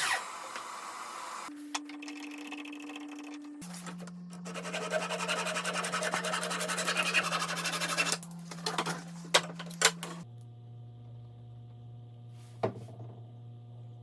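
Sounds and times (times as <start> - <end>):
steady low hum: 3.4 - 14.0
rasping scrape on wood: 4.4 - 8.2.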